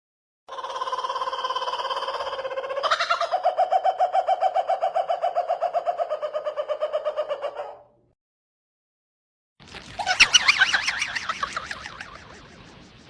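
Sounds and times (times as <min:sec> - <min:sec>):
high trembling ghost voice: 0:10.0 - 0:12.7.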